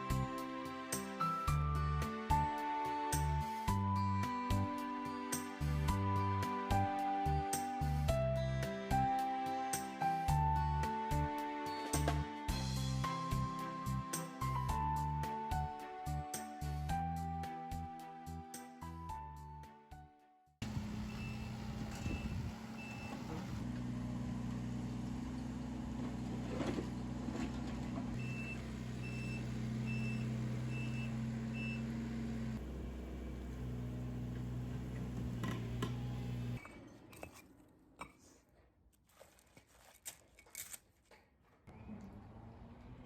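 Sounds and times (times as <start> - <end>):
digger engine running: 20.6 - 36.6.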